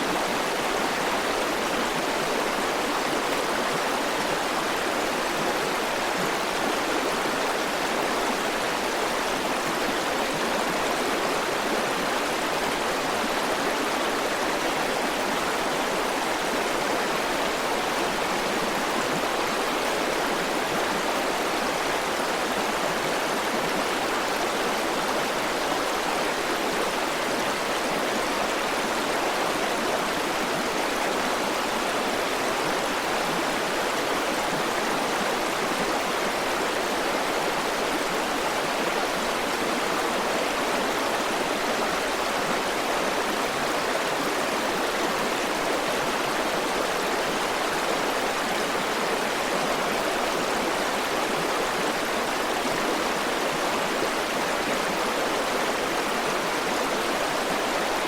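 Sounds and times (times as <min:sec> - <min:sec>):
river water flowing over rocks: 0:00.0 - 0:58.0.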